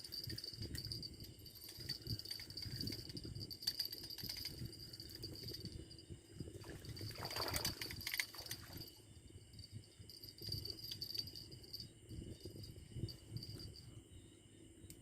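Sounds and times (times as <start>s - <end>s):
insects chirring: 0.0s - 15.0s
water splashing and trickling: 1.5s - 9.6s.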